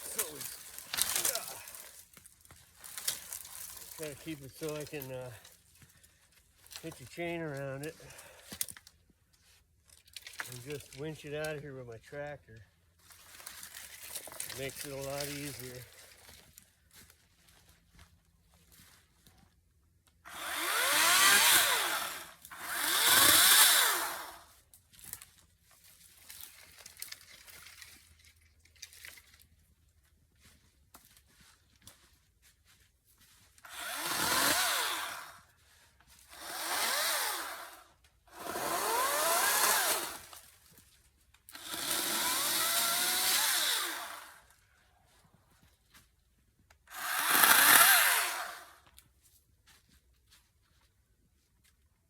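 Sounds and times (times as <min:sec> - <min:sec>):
battery chainsaw revving: 0:00.0 - 0:02.0, 0:14.5 - 0:15.8, 0:20.3 - 0:24.5, 0:33.7 - 0:35.5, 0:36.2 - 0:40.4, 0:41.5 - 0:44.5, 0:46.9 - 0:48.8.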